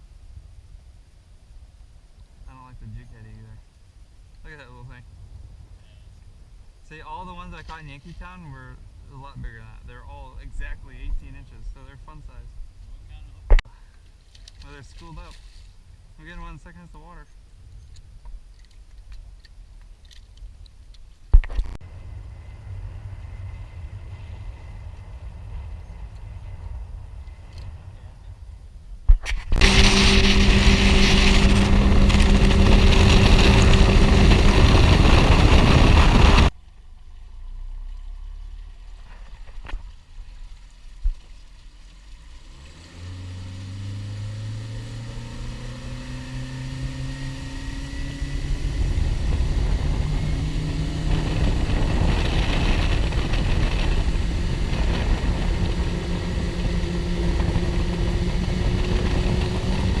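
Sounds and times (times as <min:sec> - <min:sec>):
heavy rushing noise: 0:29.4 - 0:36.5, 0:47.3 - 1:00.0
outboard motor running: 0:29.6 - 0:36.5, 0:43.3 - 1:00.0.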